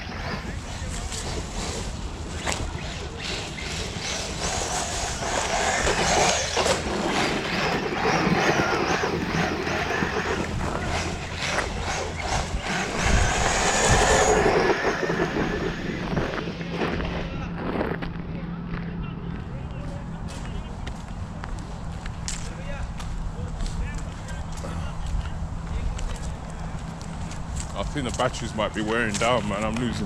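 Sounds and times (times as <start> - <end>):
electric motor whining: 0.0 - 17.7
tyre and ground noise: 0.0 - 30.0.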